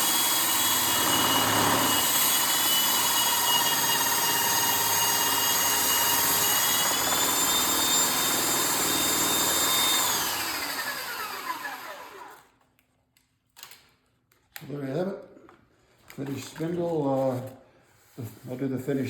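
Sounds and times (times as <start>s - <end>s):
power tool motor running: 0.0s - 12.5s.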